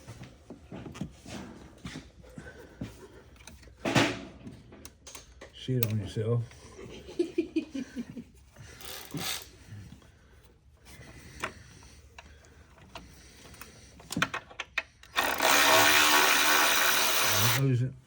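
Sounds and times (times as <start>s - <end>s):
hand tools clicking and tapping: 11.4s - 17.6s.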